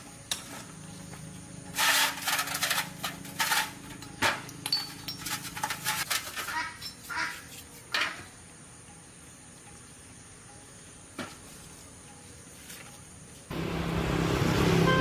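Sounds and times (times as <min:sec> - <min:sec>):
small motorcycle engine running: 0:13.5 - 0:15.0.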